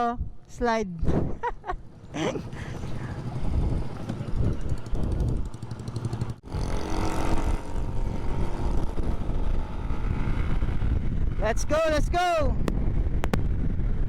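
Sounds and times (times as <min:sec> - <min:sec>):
road and wind noise: 0:00.0 - 0:14.0
motorcycle engine rumble: 0:01.4 - 0:11.5.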